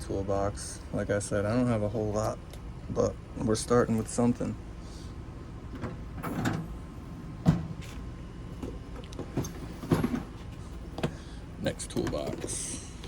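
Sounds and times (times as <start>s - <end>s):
metal drawers sliding and clunking: 5.7s - 8.0s, 8.6s - 11.2s.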